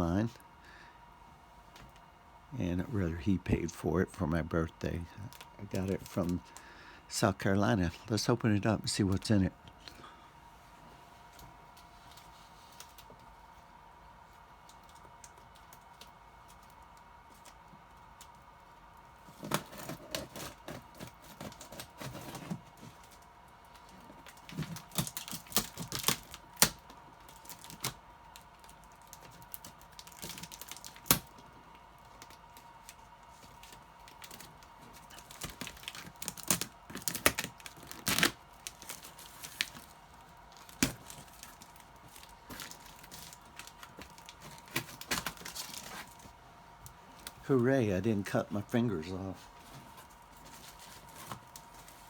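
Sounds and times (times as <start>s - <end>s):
packing material rustling: 19.2s - 47.5s, 49.0s - 52.0s
packing tape cut and torn: 19.3s - 23.2s, 23.8s - 46.3s.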